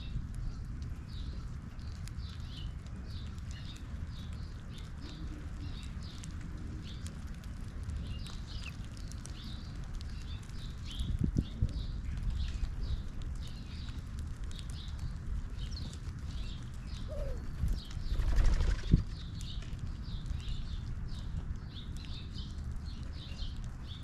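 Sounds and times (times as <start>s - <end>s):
small birds chirping: 0.0s - 24.0s
steady low rumble: 0.0s - 24.0s.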